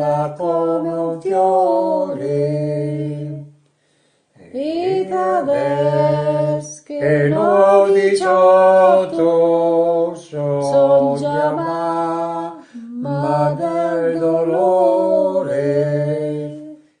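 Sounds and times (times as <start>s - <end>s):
person singing long notes: 4.4s - 16.8s.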